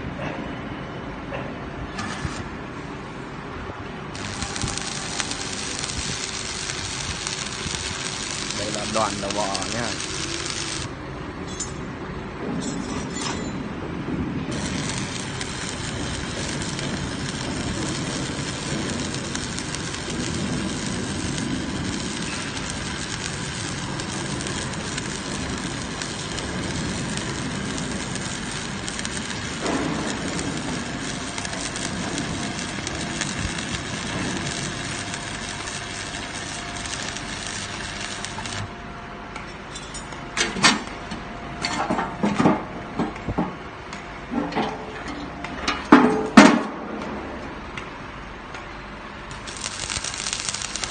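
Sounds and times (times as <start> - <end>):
welding arc crackling: 2.0 - 2.5, 4.1 - 11.0, 14.3 - 38.8, 49.3 - 50.9.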